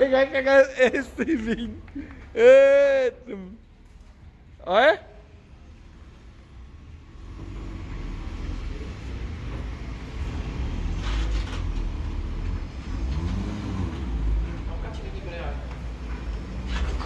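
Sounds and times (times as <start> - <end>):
vehicle engine pulling under load: 5.4 - 17.0.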